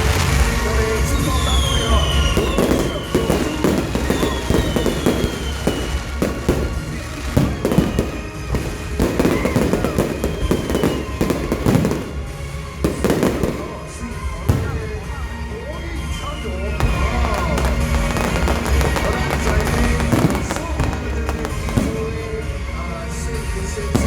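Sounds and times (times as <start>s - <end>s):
fireworks bangs and crackles: 0.0s - 24.0s
high falling whistles: 0.8s - 12.2s, 16.8s - 22.2s.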